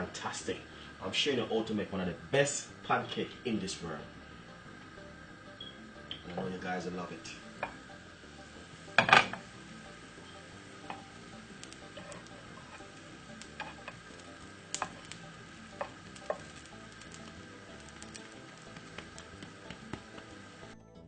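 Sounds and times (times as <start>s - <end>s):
pancakes sizzling in a pan: 4.3s - 20.8s
oil clicks and pops: 10.8s - 20.6s.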